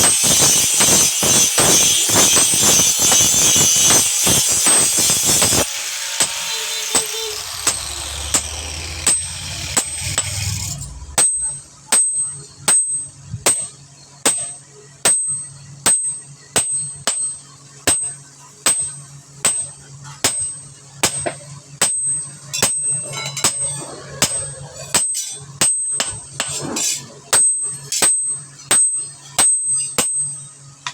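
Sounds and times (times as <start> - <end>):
hammer striking steel on anvil: 0.0 - 30.9
low hum: 6.7 - 11.8.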